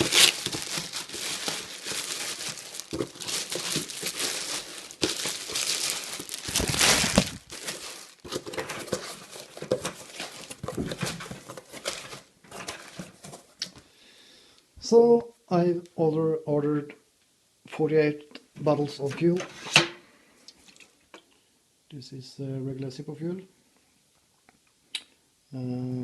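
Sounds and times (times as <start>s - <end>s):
packaging crinkling and rustling: 0.0s - 13.7s.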